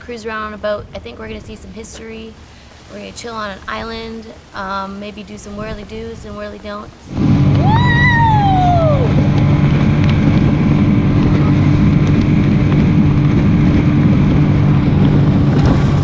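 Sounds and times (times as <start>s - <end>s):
wind buffeting microphone: 0.0s - 16.0s
outboard motor running: 7.1s - 16.0s
falling whoop: 7.5s - 9.4s.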